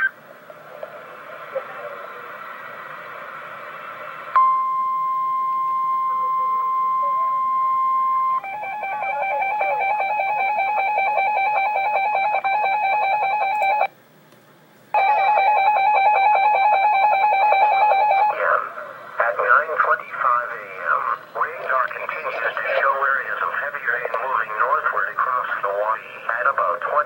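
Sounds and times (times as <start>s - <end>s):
high-pitched alarm tone: 4.4s - 13.9s, 15.0s - 18.4s
two-tone alert signal: 4.4s - 13.9s.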